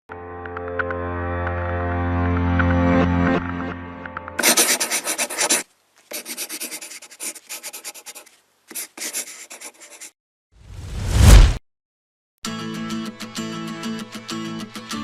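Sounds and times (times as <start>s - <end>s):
background music: 0.1s - 4.5s
rough rubbing or scratching strokes: 4.4s - 11.6s.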